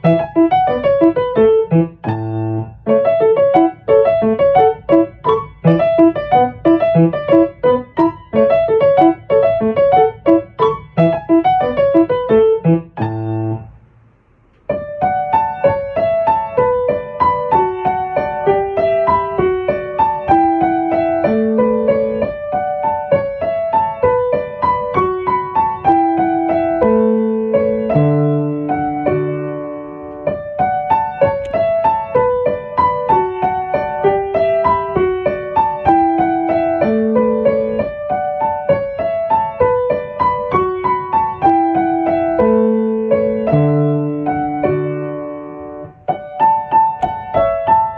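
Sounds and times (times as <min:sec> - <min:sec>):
calm solo piano: 0:00.0 - 0:13.8, 0:14.5 - 0:47.9.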